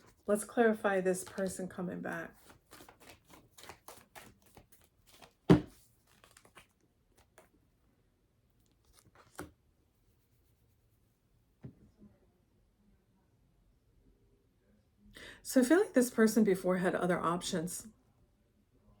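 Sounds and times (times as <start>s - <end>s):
cards being shuffled: 1.2s - 1.6s, 2.3s - 7.5s, 8.7s - 9.6s.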